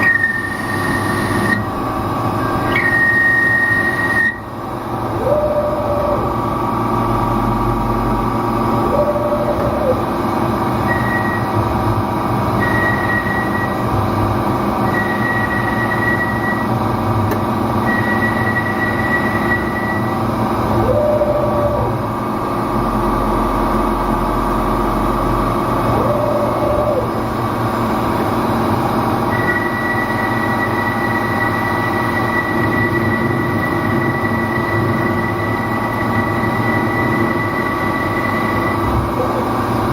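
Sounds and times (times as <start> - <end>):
lathe high whine: 0.0 - 17.0, 17.6 - 39.9
machine hum: 0.0 - 39.9
short lower machine tones: 2.4 - 11.6, 17.8 - 27.3.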